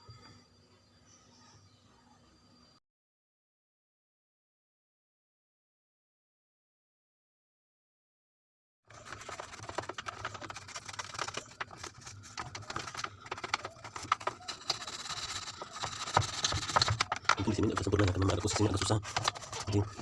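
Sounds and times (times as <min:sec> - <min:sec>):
scrubbing and scraping in a filter: 0:08.9 - 0:20.0.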